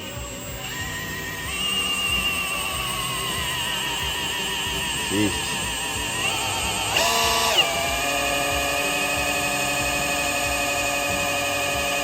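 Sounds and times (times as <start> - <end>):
electric drill whining: 0.0 - 12.0.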